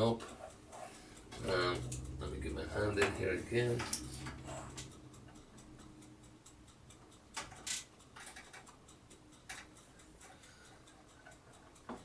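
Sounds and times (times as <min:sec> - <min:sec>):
light clicks and scrapes of connectors: 0:02.9 - 0:05.0.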